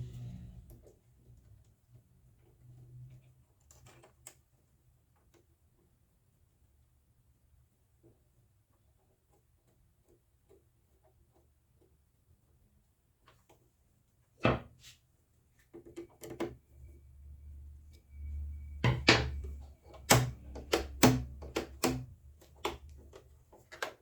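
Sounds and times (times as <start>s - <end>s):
faint low hum: 0.0s - 1.8s, 16.6s - 23.3s
plastic knocks and clicks: 18.8s - 24.0s.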